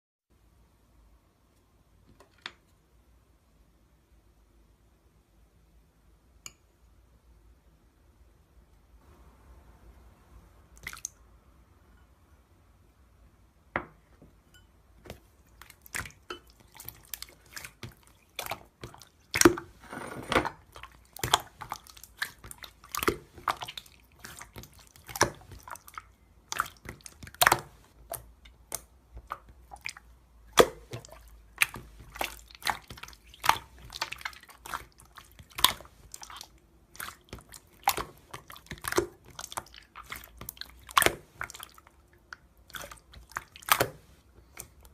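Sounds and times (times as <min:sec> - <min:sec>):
wet chewing and crunching: 0:15.5 - 0:19.7, 0:20.6 - 0:44.9.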